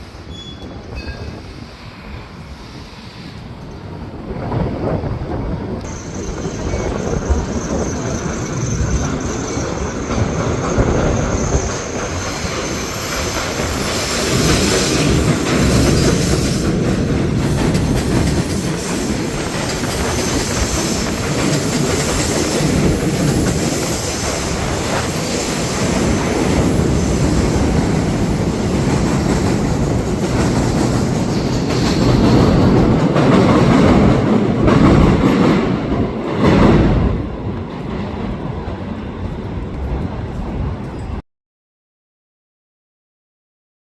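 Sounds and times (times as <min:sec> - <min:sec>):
subway train wheels clattering: 0:00.0 - 0:41.2
high wheel squeal: 0:00.3 - 0:01.9, 0:05.9 - 0:15.0.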